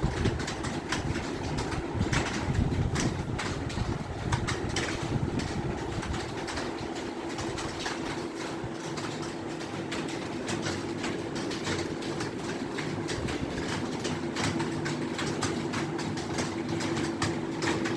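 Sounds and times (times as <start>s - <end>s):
fast keyboard typing: 0.0s - 17.9s.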